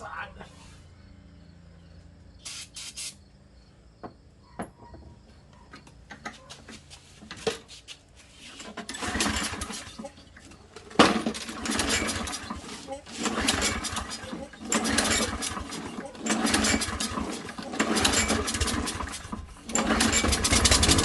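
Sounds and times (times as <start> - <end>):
lawn mower engine running rough: 8.3 - 21.0.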